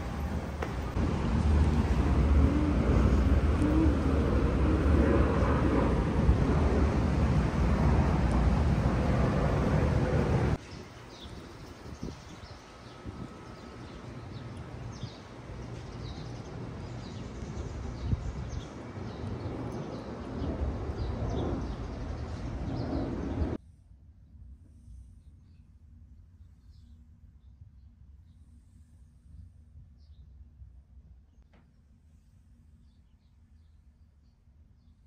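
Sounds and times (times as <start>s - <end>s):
wind buffeting microphone: 0.0s - 23.6s
small birds chirping: 10.6s - 23.6s.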